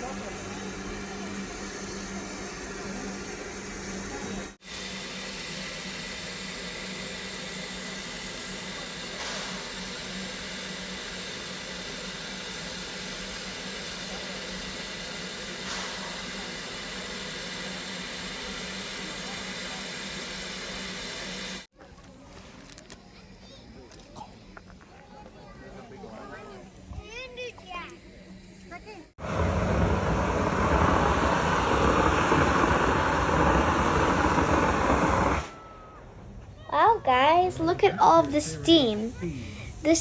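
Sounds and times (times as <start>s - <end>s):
steam train hiss and rumble: 0.0s - 21.7s, 25.9s - 35.5s, 36.8s - 40.0s
low hum: 29.2s - 36.2s.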